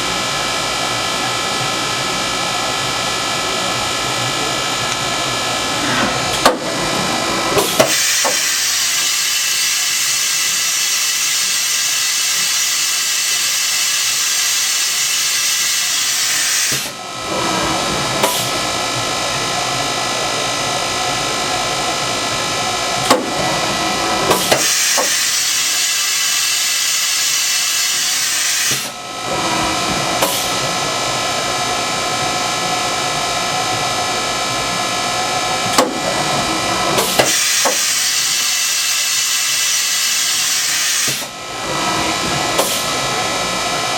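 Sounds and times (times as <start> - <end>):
machine steady hum: 0.0 - 10.9, 14.1 - 43.9
machine tool changer clunks: 5.8 - 8.6, 23.0 - 25.2, 35.6 - 38.0.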